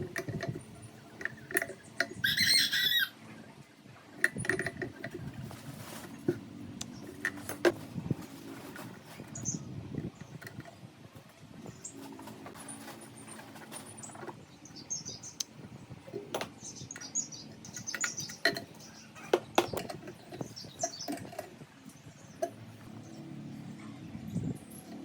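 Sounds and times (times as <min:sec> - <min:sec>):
small birds chirping: 0:09.0 - 0:10.8, 0:11.6 - 0:25.0
sharp clicks and knocks: 0:16.1 - 0:21.6.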